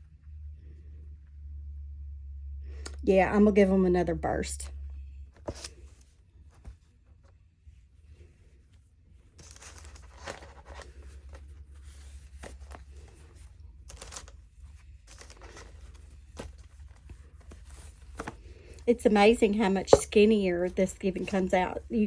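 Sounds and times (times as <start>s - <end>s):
fabric pads rustling and peeling: 5.4s - 22.0s.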